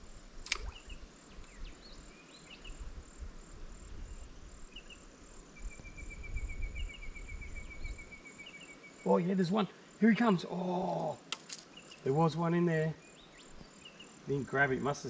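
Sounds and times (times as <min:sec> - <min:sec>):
insects chirring: 0:00.0 - 0:15.0
sharp click: 0:00.4 - 0:00.8.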